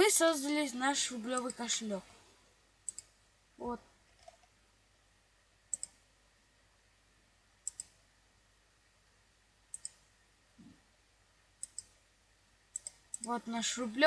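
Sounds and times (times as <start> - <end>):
sharp double clicks: 5.7 - 6.0, 7.6 - 8.0, 11.6 - 12.0, 12.8 - 13.3.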